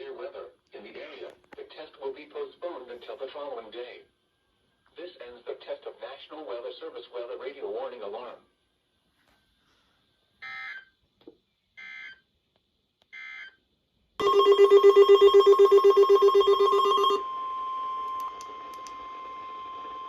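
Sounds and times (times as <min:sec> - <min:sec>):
radio receiver alarm beeping rapidly: 0:14.2 - 0:17.2
steady warning alarm tone: 0:14.2 - 0:20.0.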